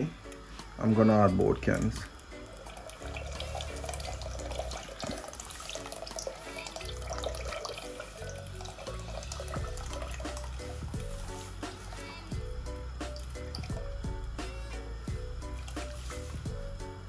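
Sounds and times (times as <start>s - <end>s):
liquid pouring into pot: 1.7s - 11.1s
background music with bass: 3.0s - 5.4s, 6.8s - 17.0s.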